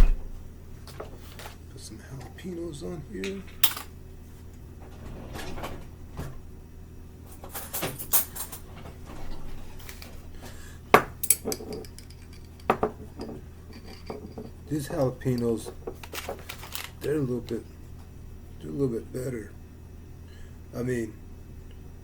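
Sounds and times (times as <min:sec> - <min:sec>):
low steady hum: 0:00.0 - 0:22.0
utensils and dishes clinking: 0:11.2 - 0:17.0.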